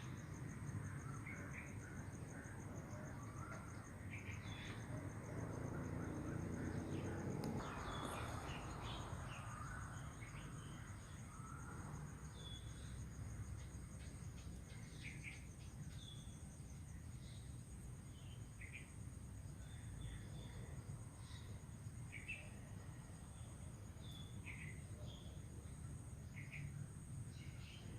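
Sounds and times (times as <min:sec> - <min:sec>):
birds chirping: 0:05.8 - 0:10.8.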